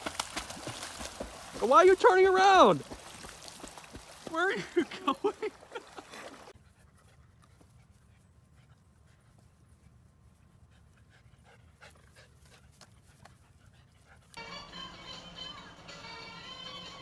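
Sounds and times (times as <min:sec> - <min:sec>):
dog panting: 0:04.3 - 0:14.4.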